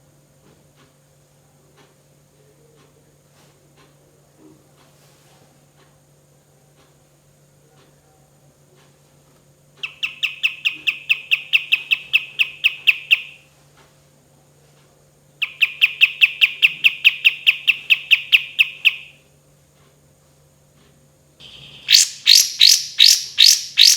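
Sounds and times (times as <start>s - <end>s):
bird whistling rapid notes: 21.4s - 23.9s.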